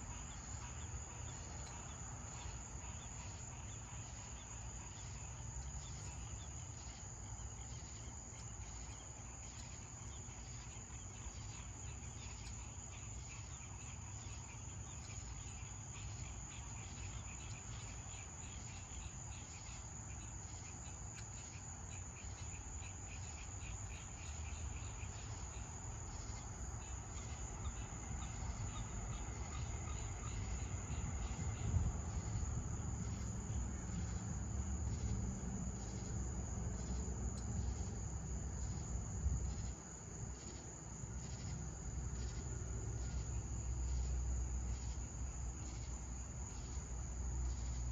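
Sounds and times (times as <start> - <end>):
crickets chirping and trilling: 0.0 - 47.9.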